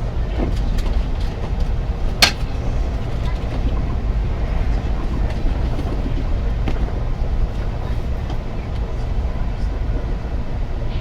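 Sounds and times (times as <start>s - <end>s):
train rumbling: 0.0s - 11.0s
faint clicks and rattles: 0.5s - 3.6s.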